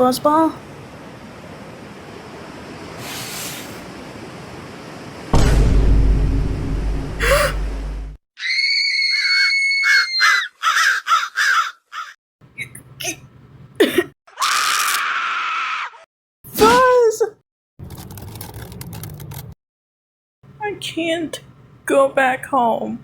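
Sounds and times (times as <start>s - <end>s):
loud rumbling noise: 4.4s - 8.2s
high scream: 8.4s - 10.9s, 14.3s - 16.1s
drawn-out wail: 8.4s - 12.2s, 14.3s - 16.1s.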